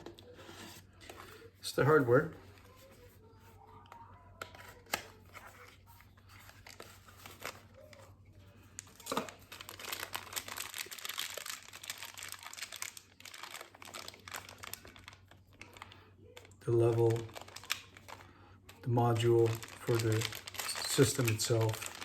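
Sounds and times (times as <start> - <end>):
packaging crinkling and tearing: 4.4 - 8.1, 8.7 - 22.0.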